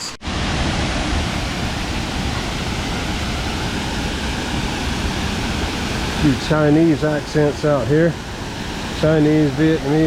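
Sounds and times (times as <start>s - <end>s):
waterfall rushing: 0.2s - 10.0s.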